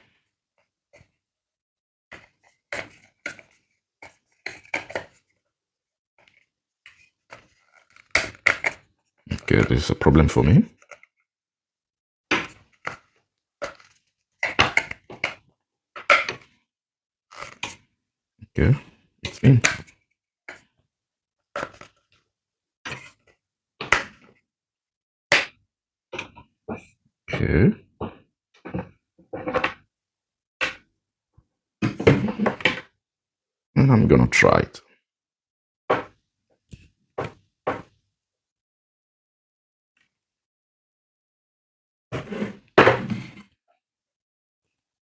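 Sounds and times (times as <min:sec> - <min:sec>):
clicking and scraping of plastic part: 0:06.2 - 0:09.5.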